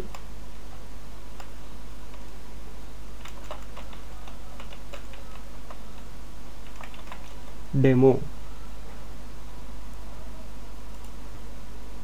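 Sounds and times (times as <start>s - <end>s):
steady low hum: 0.0s - 12.0s
keyboard typing: 3.2s - 7.6s.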